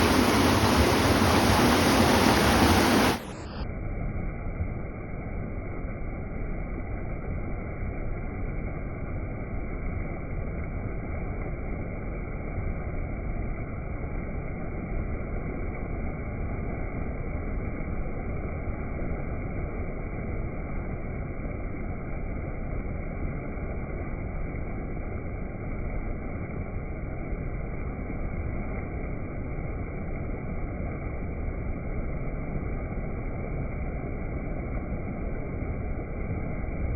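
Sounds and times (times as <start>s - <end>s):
waterfall roaring: 0.0s - 3.6s.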